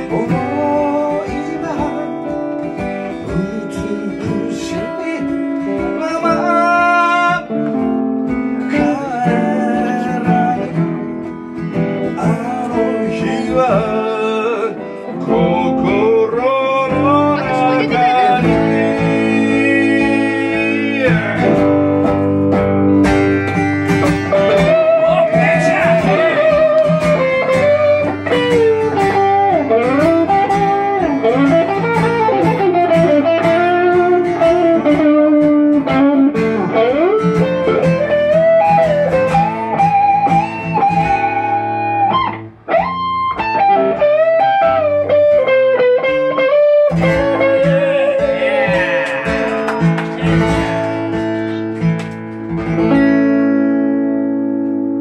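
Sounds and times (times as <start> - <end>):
person singing: 0.0 - 7.5, 8.6 - 10.9, 12.2 - 22.0, 24.0 - 35.1, 46.0 - 50.6
guitars: 0.0 - 55.0.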